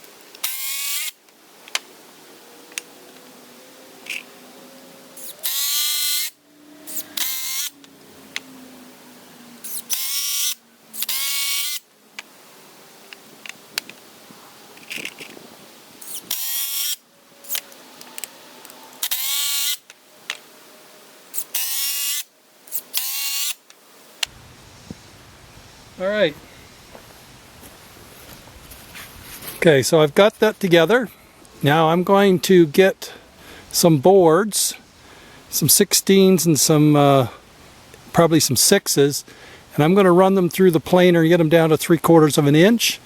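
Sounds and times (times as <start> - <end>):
power drill driving screws into wood: 0.4 - 1.2, 5.2 - 7.8, 9.6 - 11.9, 16.0 - 19.9, 21.3 - 23.6.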